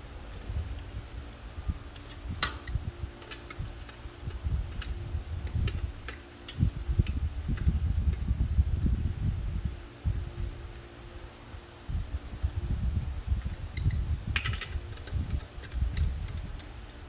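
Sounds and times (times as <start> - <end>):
faint steady hum: 0.0 - 17.0
metallic clicks of bolts and tools: 1.9 - 4.0, 13.8 - 17.0.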